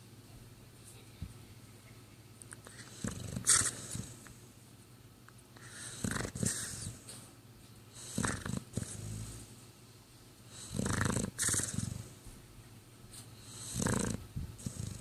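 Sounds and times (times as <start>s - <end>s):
pet snoring: 2.7s - 4.3s, 5.6s - 7.1s, 7.9s - 9.6s, 10.5s - 12.2s, 13.4s - 15.0s.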